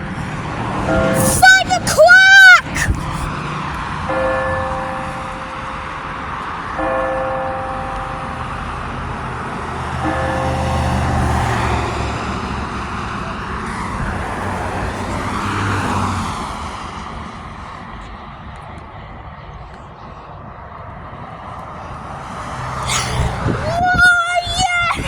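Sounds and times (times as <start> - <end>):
vehicle passing: 2.7 - 17.6, 21.8 - 25.0.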